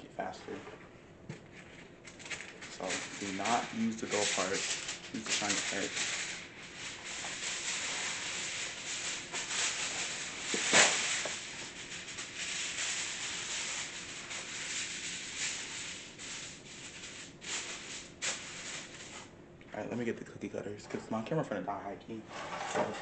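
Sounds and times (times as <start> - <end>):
aluminium foil crinkling: 1.4 - 19.3.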